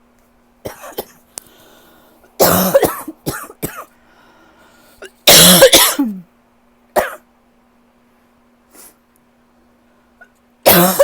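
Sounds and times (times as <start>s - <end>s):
person coughing harshly: 0.7s - 1.2s, 2.4s - 3.9s, 5.2s - 6.3s, 7.0s - 7.2s, 10.6s - 11.0s.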